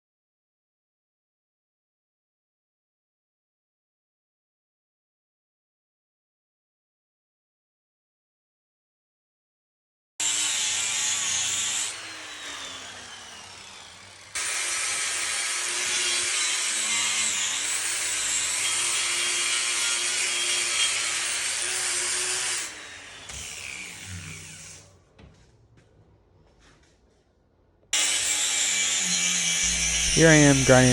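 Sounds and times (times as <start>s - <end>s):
angle grinder grinding steel: 10.2s - 24.9s, 28.0s - 30.9s.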